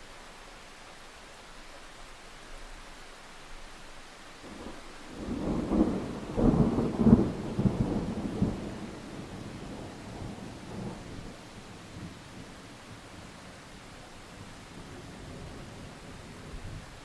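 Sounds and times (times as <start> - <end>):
steady rain hiss: 0.0 - 17.0
thunder rumbling and cracking: 4.5 - 13.3.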